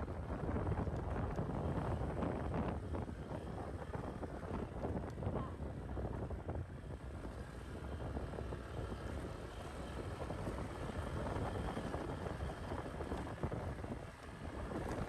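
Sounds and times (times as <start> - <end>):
scooter engine and road noise: 0.0 - 15.0
wind buffeting microphone: 0.0 - 15.0.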